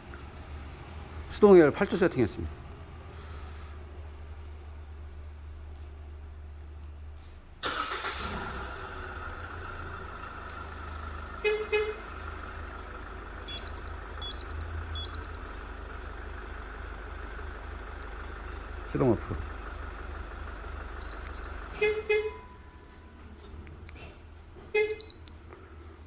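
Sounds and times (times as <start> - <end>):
car engine running: 7.6 - 25.4
car horn toots: 11.3 - 12.3, 20.9 - 22.8, 24.7 - 25.3
rising electronic chirps: 13.4 - 15.6, 20.9 - 21.6.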